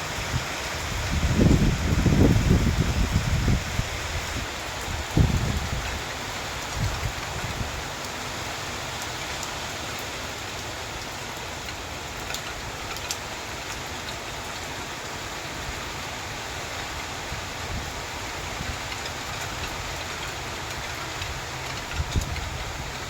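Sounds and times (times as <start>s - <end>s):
steady rain falling: 0.0s - 23.0s
raindrop ticks: 9.0s - 14.7s, 18.4s - 23.0s.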